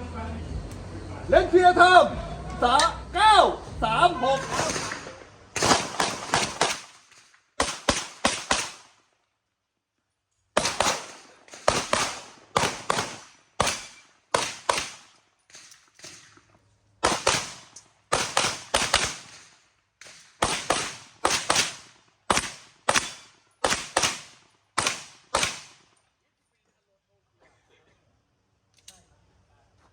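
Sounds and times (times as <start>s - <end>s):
handgun shots echoing: 20.0s - 25.8s.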